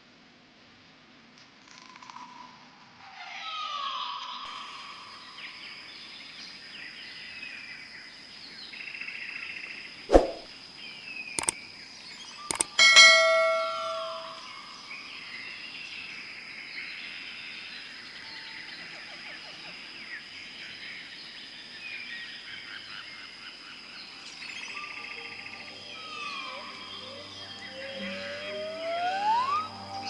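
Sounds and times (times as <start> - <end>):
birds chirping: 12.3 - 15.4
loud ringing bird call: 12.5 - 15.1, 24.6 - 30.0
rising glide call: 12.8 - 14.8, 24.6 - 30.0.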